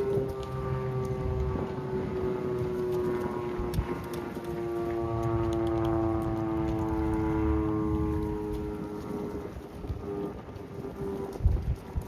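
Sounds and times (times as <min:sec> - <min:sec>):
low rumble: 0:00.0 - 0:12.0
outdoor warning siren: 0:00.0 - 0:12.0.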